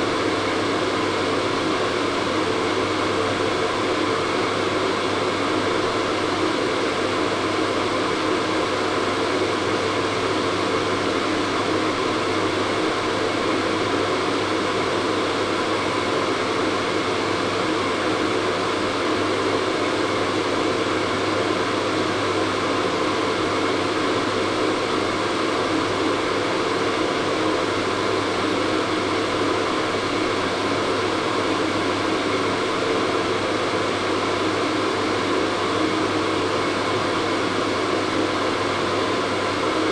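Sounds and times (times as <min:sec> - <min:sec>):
hair dryer blowing air: 0:00.0 - 0:39.9.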